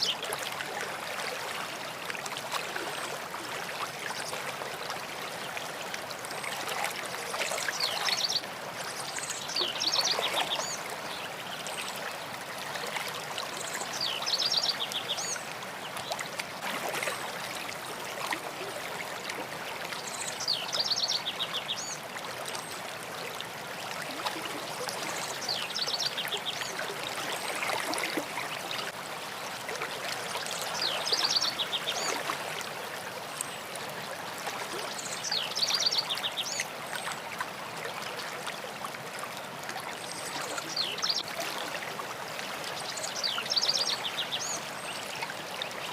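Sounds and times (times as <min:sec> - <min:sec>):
stream of water trickling: 0:00.0 - 0:45.9.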